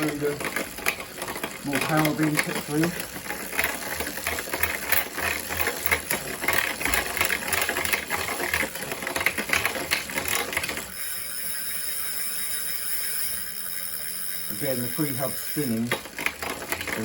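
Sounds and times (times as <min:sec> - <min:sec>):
trainer spinning whir: 0:00.0 - 0:17.0
trainer rhythmic grinding: 0:14.5 - 0:16.0.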